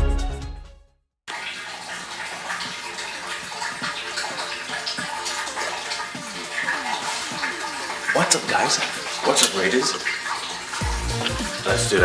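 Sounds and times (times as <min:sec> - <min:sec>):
water tap running: 0:01.3 - 0:12.0.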